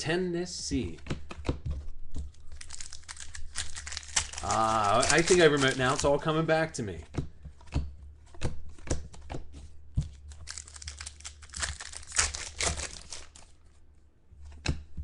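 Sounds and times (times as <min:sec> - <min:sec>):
card pack wrapper crinkling and tearing: 0:02.3 - 0:06.4, 0:10.3 - 0:13.6.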